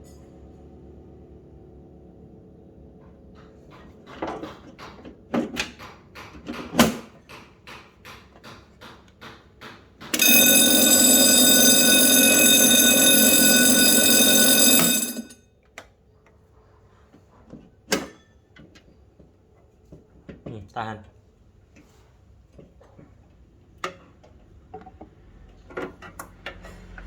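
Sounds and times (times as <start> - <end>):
fire alarm bell ringing: 10.2 - 15.4.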